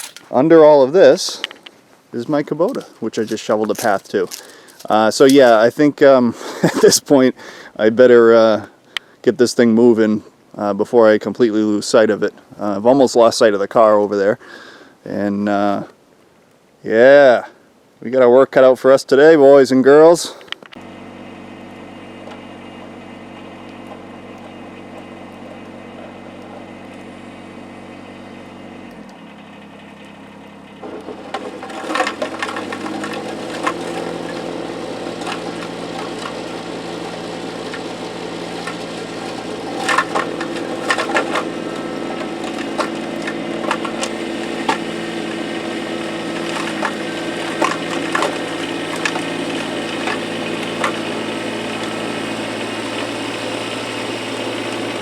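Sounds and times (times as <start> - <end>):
snow and ice crunching: 0.0 - 5.9, 30.8 - 55.0
diesel tractor engine running: 20.8 - 55.0.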